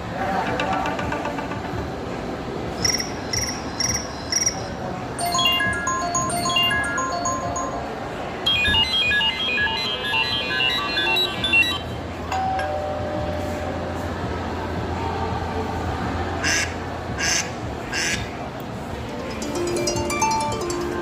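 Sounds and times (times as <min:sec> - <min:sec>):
held electronic tone: 0:02.8 - 0:12.0
chiming ringtone melody: 0:05.2 - 0:13.6, 0:19.1 - 0:21.0
high tinkling notes: 0:19.1 - 0:21.0.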